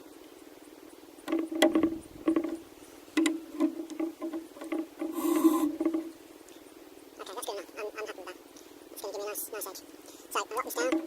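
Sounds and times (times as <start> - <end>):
metal knocks and clicks: 1.2 - 6.2, 10.8 - 11.0
short rattle: 1.2 - 6.2.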